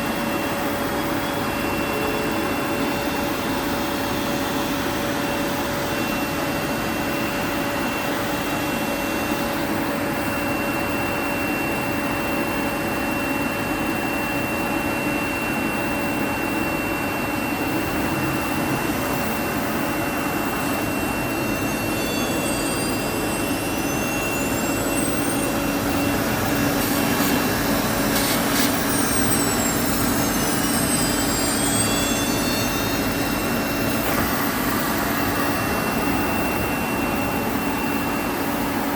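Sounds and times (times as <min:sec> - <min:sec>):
whines rising and falling in pitch: 0:13.4 - 0:38.9.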